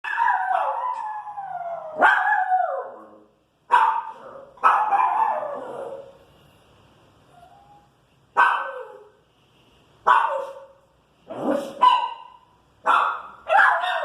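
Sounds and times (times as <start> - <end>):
dog barking and howling: 0.0 - 6.2, 11.5 - 14.0.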